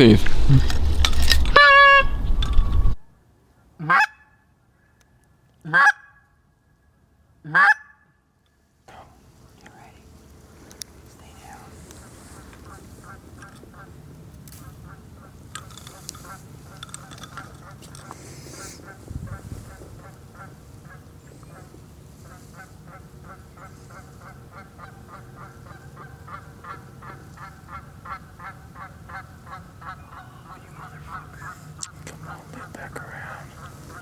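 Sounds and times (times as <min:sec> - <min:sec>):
geese honking: 0:00.0 - 0:03.0, 0:19.7 - 0:31.7
rustling: 0:00.0 - 0:03.0.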